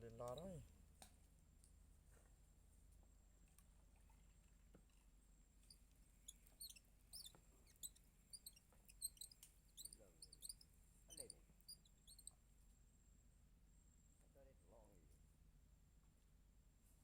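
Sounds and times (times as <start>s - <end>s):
high-pitched animal chirps: 6.3s - 12.3s.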